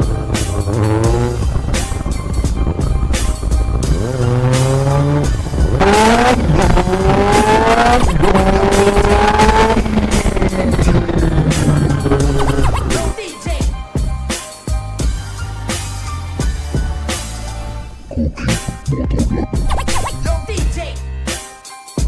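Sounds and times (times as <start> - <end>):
motorcycle accelerating through gears: 0.0 - 13.1.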